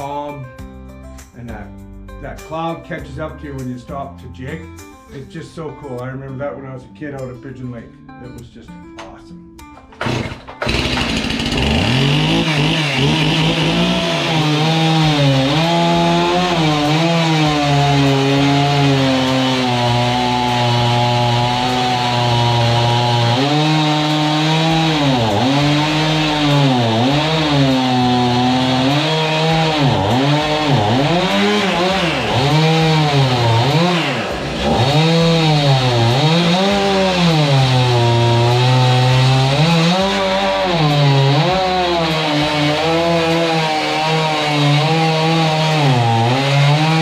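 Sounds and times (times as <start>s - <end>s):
chainsaw cutting wood: 9.8s - 47.0s.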